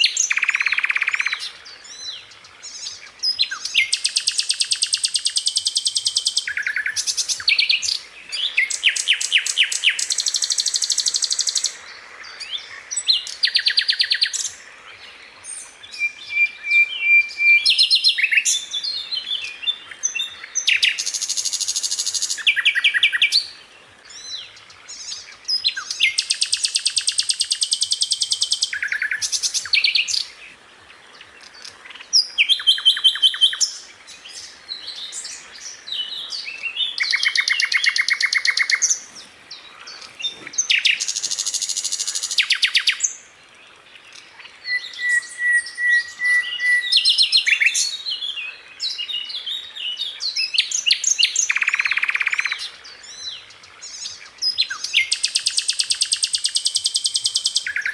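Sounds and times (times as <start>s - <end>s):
sharp high bird chirps: 0.3s - 1.4s.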